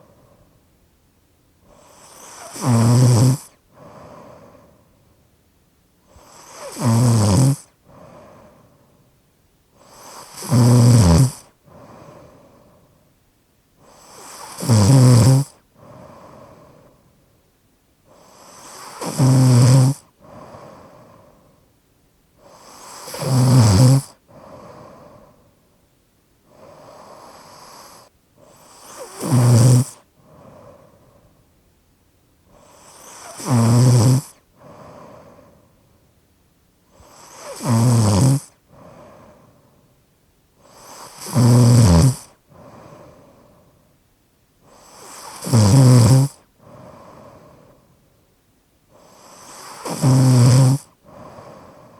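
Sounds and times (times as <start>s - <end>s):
person snoring: 1.7s - 4.7s, 6.1s - 8.8s, 9.8s - 12.8s, 13.8s - 16.9s, 18.1s - 21.4s, 22.4s - 25.4s, 26.5s - 31.2s, 32.5s - 35.6s, 36.9s - 39.6s, 40.6s - 43.6s, 44.7s - 47.8s, 49.0s - 51.9s.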